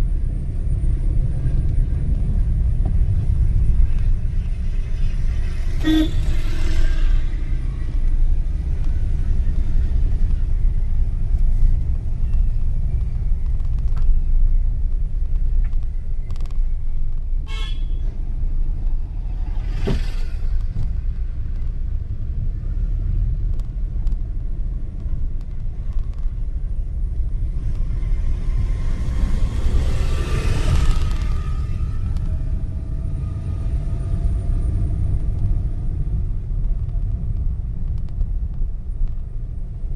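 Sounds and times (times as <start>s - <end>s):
road vehicle rumble: 0.0s - 39.9s
vehicles whooshing past: 3.5s - 10.2s, 18.2s - 23.3s, 27.4s - 36.3s
short horn toot: 5.8s - 7.1s.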